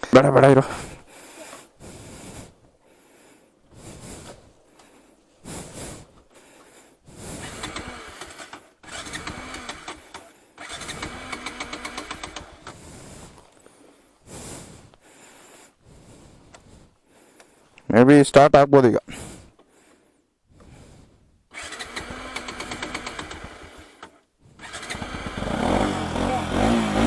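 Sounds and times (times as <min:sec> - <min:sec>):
motorcycle engine cranking: 0:07.3 - 0:12.8, 0:21.5 - 0:27.0.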